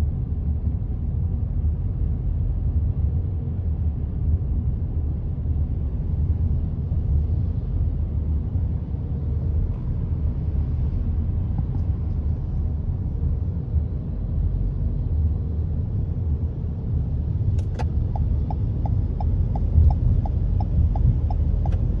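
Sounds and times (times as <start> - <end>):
idling car engines: 0.0 - 22.0
light even ticking: 17.5 - 22.0.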